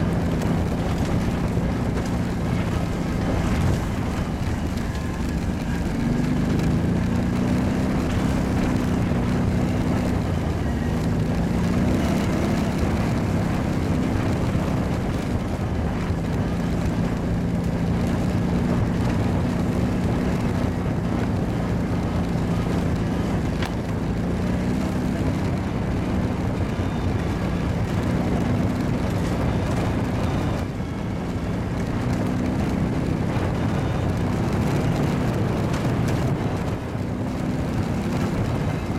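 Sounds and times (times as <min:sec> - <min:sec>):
quad bike engine running: 0:00.0 - 0:38.9
steady rushing noise: 0:00.0 - 0:38.9.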